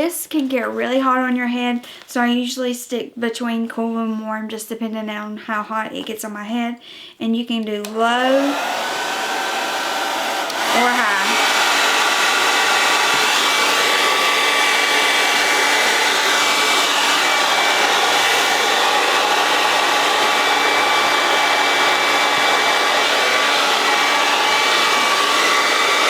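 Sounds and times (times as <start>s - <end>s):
hair dryer running: 7.8s - 26.0s.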